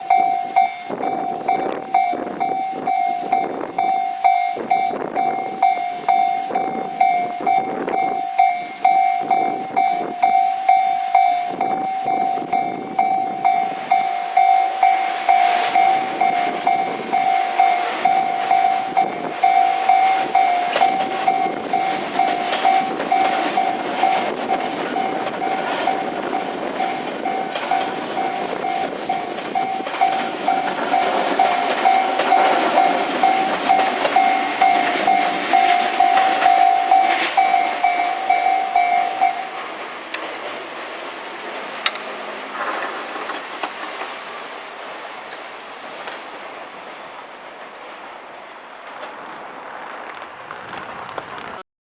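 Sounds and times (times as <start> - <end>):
level-crossing alarm ringing: 0.0 - 39.8
electric train running: 0.0 - 47.0
wheels clattering over rail joints: 0.0 - 51.6.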